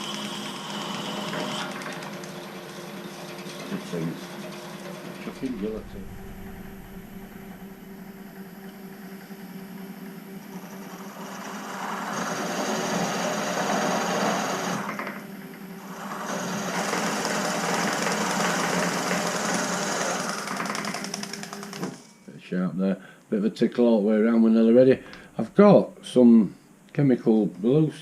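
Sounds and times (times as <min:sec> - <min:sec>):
electric drill cutting into metal: 0:00.0 - 0:02.1, 0:15.9 - 0:20.9.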